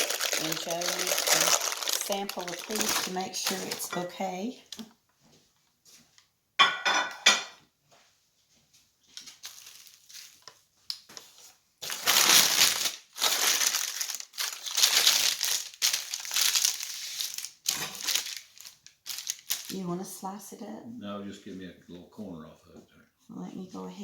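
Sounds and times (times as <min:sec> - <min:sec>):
wrapping crinkling: 0:00.0 - 0:04.0, 0:09.2 - 0:20.0.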